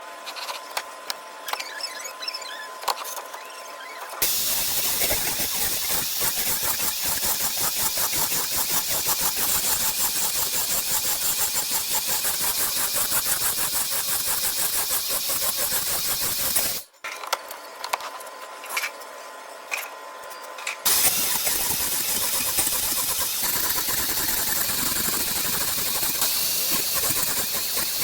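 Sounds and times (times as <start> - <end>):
motorised saw cutting wood: 4.2 - 16.9, 20.8 - 28.0.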